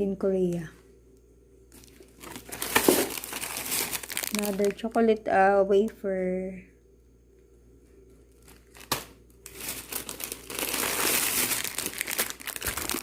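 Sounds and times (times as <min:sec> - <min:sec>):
plastic packaging crinkling: 0:01.7 - 0:05.2, 0:08.3 - 0:13.0.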